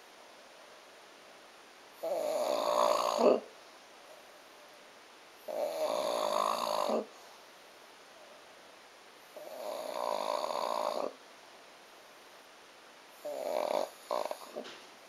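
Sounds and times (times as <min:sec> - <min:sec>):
person snoring: 0:02.0 - 0:03.5, 0:05.5 - 0:07.1, 0:09.4 - 0:11.2, 0:13.2 - 0:14.6.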